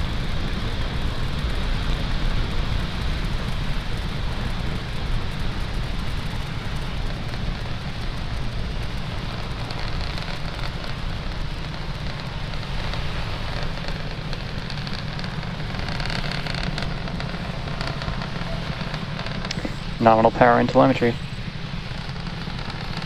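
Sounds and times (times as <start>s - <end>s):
rocket engines deep rumble: 0.0s - 23.0s.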